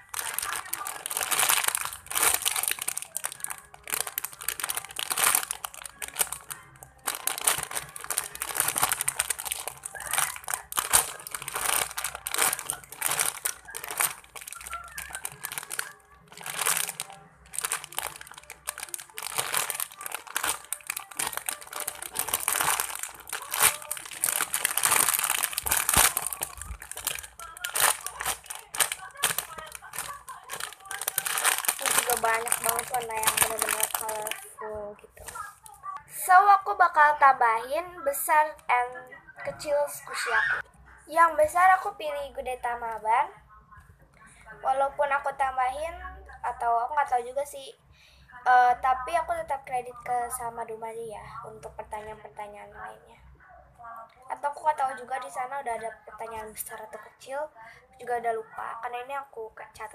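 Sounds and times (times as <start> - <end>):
plastic toy crinkling: 0.0 - 36.0.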